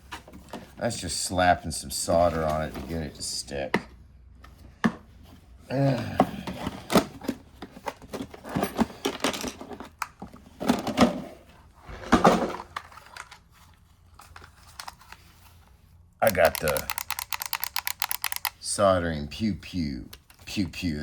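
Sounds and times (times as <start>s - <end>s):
tools clicking and tapping: 16.2s - 18.6s.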